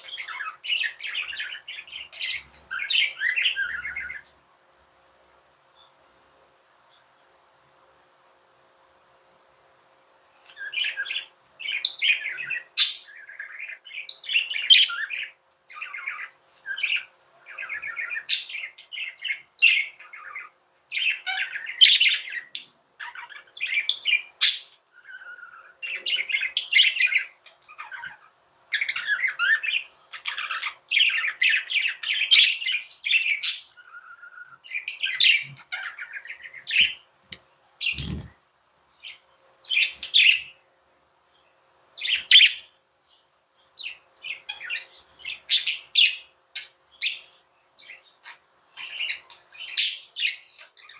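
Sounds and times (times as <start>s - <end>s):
budgerigars chattering: 37.8s - 38.3s.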